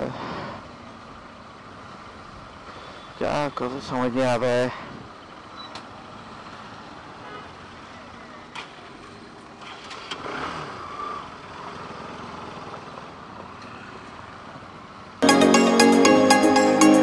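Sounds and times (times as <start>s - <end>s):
vehicle engines in traffic: 0.0s - 15.2s.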